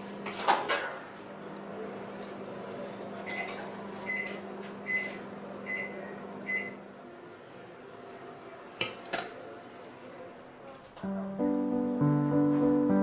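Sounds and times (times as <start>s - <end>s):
oven timer beeping: 4.1s - 6.8s.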